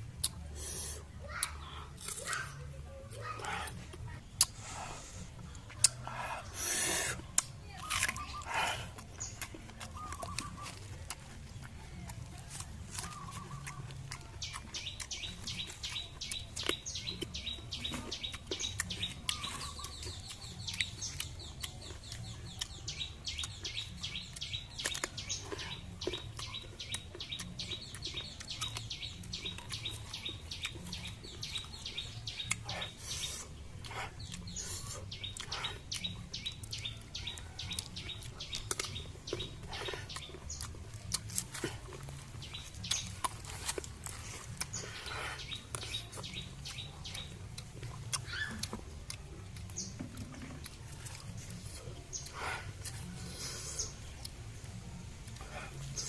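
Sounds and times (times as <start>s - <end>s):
birds chirping: 0.0s - 56.0s.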